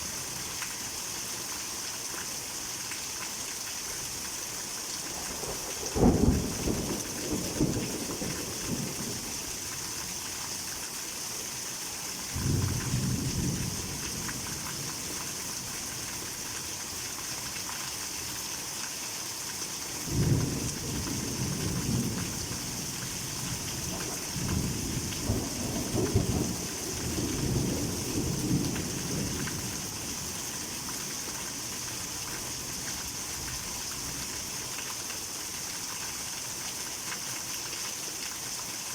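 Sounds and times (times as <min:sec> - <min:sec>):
heavy rain falling: 0:00.0 - 0:38.9
thunder rumbling: 0:20.1 - 0:29.8.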